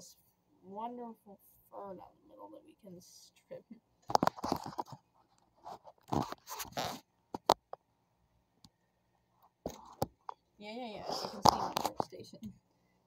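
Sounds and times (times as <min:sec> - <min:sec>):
seed head tearing and scraping: 0:04.0 - 0:05.0, 0:05.6 - 0:07.5.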